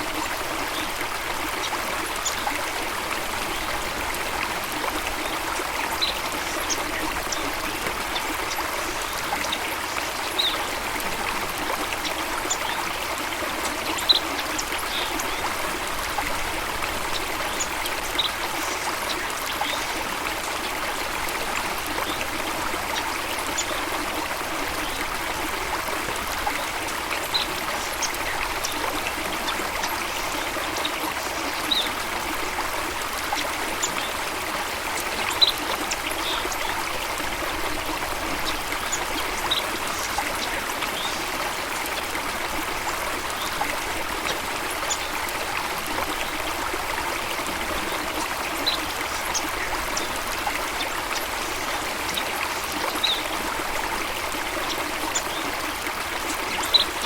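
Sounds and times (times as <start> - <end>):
stream water rushing: 0.0 - 57.0.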